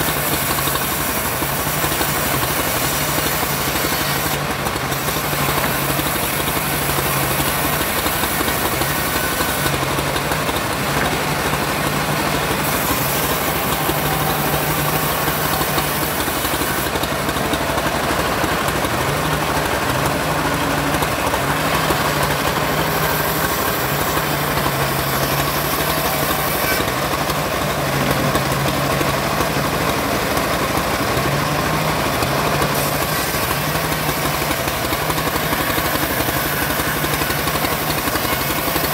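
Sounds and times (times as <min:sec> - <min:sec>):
saw blade hissing: 0:00.0 - 0:10.4, 0:11.0 - 0:18.8, 0:19.4 - 0:27.0
bandsaw mill drive hum: 0:00.0 - 0:38.9.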